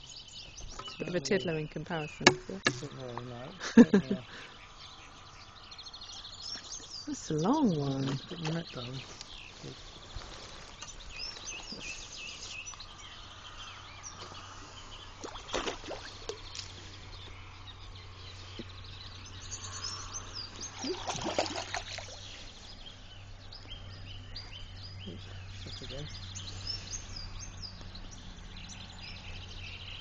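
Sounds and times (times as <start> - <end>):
small birds chirping: 0.0 - 30.0
water splashing: 15.2 - 16.8, 20.6 - 22.4.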